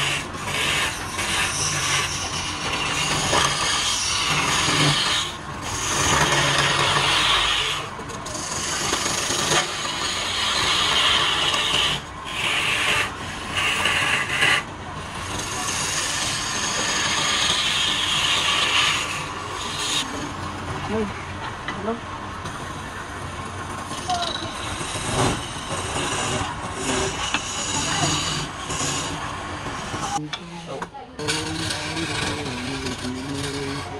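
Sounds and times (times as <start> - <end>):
wood lathe tool scraping: 0.0 - 33.9.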